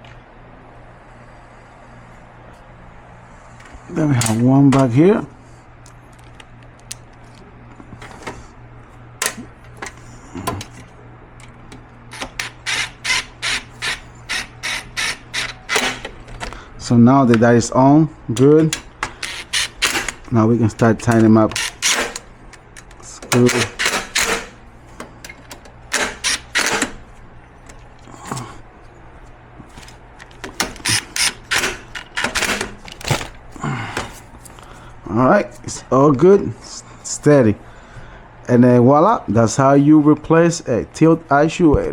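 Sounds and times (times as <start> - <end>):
hand ratchet ratcheting: 12.1 - 16.2, 18.6 - 24.6, 25.2 - 27.0, 30.5 - 32.8
power tool tightening screws: 12.1 - 16.2, 18.7 - 20.3, 21.0 - 24.6, 25.3 - 27.0, 30.2 - 33.1.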